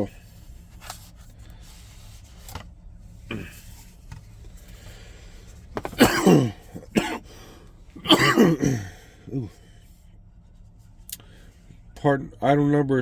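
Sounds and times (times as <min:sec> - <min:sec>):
man coughing: 0:03.3 - 0:03.7, 0:05.8 - 0:09.6
faint handling knocks: 0:05.7 - 0:06.1.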